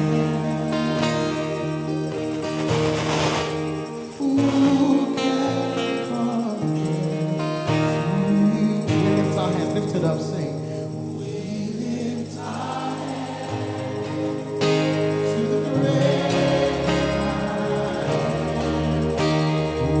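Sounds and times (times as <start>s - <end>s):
group singing gospel music: 0.0s - 6.7s, 11.1s - 20.0s
instrumental chords and bass: 14.0s - 20.0s.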